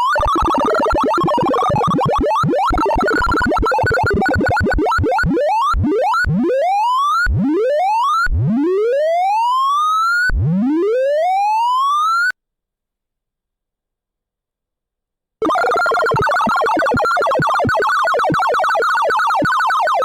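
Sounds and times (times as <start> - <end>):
synthesized beeps: 0.0 - 6.3, 15.4 - 20.0.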